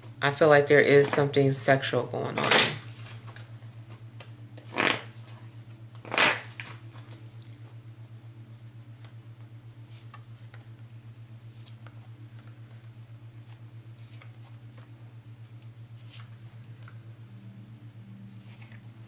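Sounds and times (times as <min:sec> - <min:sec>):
low hum: 0:00.0 - 0:19.0.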